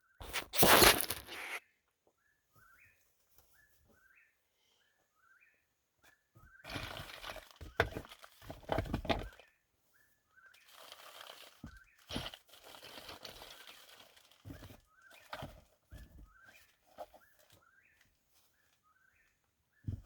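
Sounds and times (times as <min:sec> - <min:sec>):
rustling and crinkling: 0:00.2 - 0:01.6, 0:06.5 - 0:09.6, 0:10.4 - 0:20.0.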